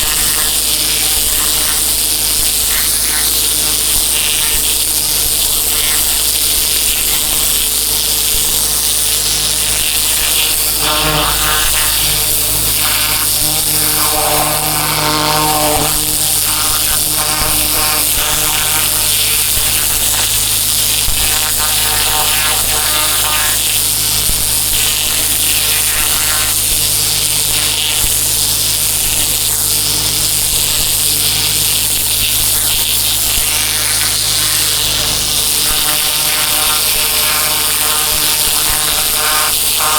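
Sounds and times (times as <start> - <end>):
pressure washer engine drone: 0.0 - 39.9
water spray hiss: 0.0 - 39.9.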